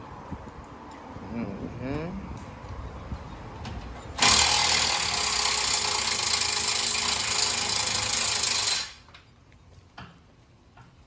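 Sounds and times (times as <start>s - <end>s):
power tool grinding: 4.2s - 9.1s.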